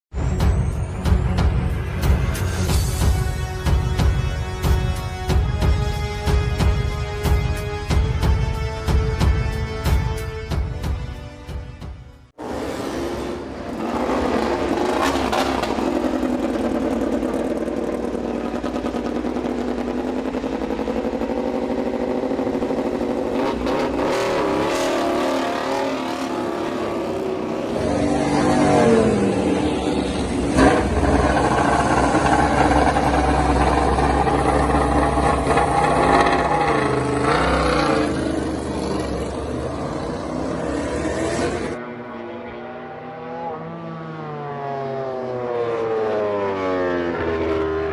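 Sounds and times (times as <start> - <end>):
racing motorcycle engine revving: 12.4 - 47.9.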